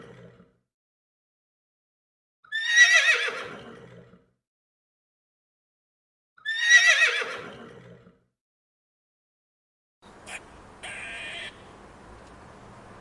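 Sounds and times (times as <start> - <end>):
horse whinnying: 2.5 - 3.7, 6.4 - 7.7.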